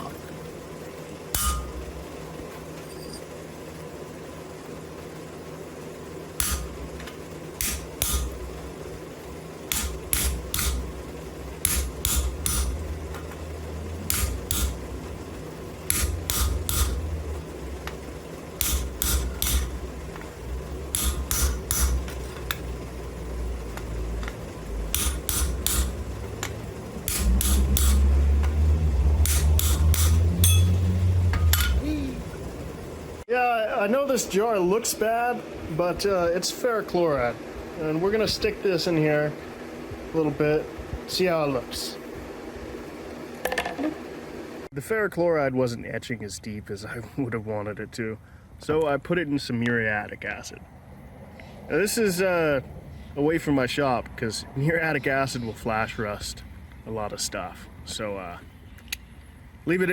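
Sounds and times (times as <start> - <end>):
low hum: 0.0 - 44.7.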